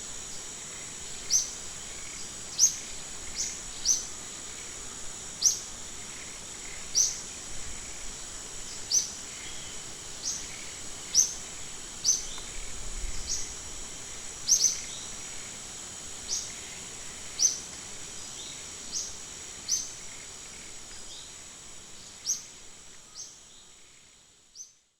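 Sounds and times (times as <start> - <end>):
high-pitched insect drone: 0.0 - 24.9.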